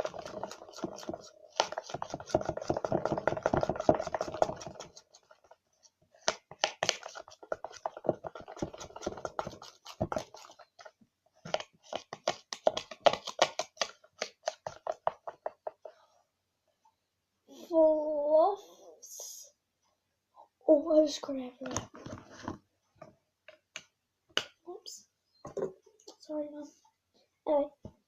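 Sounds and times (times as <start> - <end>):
slime squishing: 0.0 - 5.6, 6.2 - 15.4.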